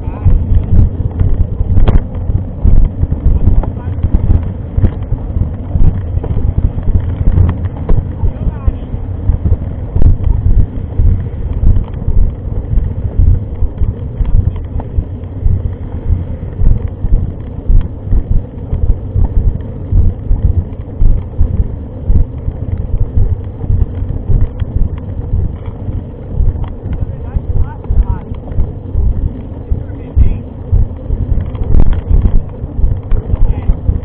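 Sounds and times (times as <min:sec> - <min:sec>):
wind buffeting microphone: 0:00.0 - 0:34.0.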